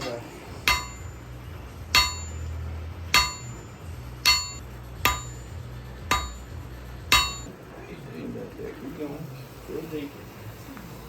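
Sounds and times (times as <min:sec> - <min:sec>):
low steady hum: 0:00.0 - 0:09.5
hammer striking steel on anvil: 0:00.5 - 0:07.5.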